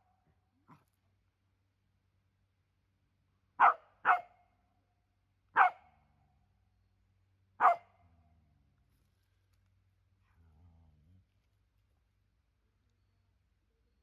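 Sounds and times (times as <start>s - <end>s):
dog barking: 3.6s - 4.4s, 5.6s - 5.9s, 7.6s - 8.0s.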